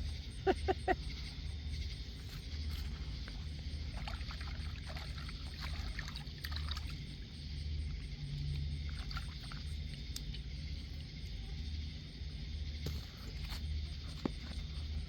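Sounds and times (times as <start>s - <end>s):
steady low rumble: 0.0s - 15.0s
water trickling and splashing: 1.8s - 11.4s, 12.8s - 15.0s.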